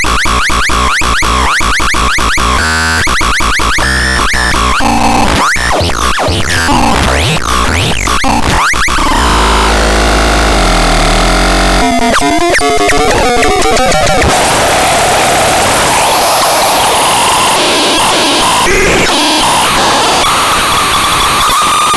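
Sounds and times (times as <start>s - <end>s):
synthesizer notes: 0.3s - 14.3s.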